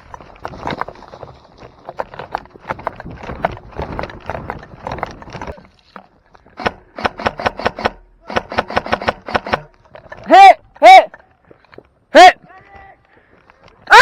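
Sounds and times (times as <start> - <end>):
rustling through brush: 0.0 - 7.6
footsteps on rough ground: 0.0 - 8.2, 9.3 - 14.0.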